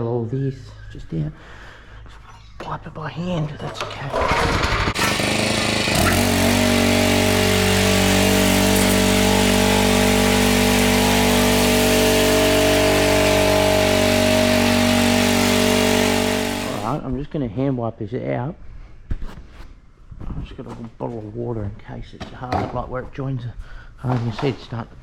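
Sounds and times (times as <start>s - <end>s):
small petrol engine running: 3.7s - 17.0s.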